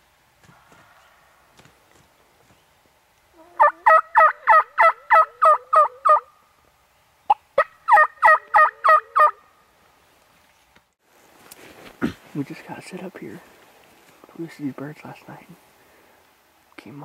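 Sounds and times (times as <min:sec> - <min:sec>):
turkey yelping: 0:03.4 - 0:06.3, 0:07.3 - 0:09.4.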